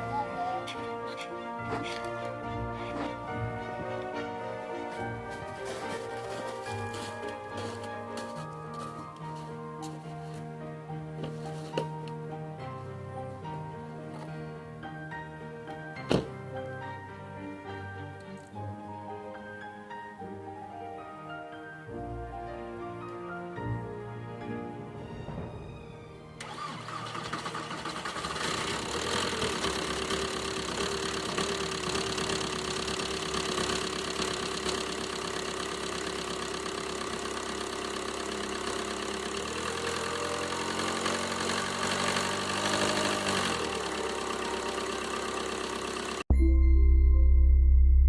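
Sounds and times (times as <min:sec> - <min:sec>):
diesel engine starting and idling: 0:25.1 - 0:46.3.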